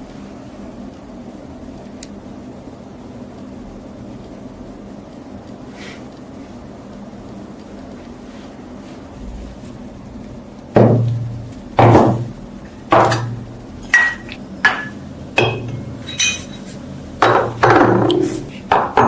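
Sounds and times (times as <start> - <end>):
hammer striking metal: 12.9 - 13.4, 14.0 - 16.6, 17.2 - 19.0.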